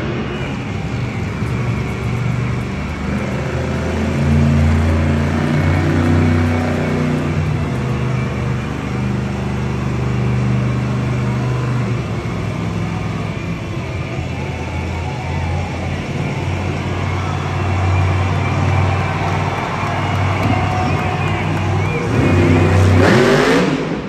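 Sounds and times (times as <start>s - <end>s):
monster truck engine revving: 0.0s - 24.0s.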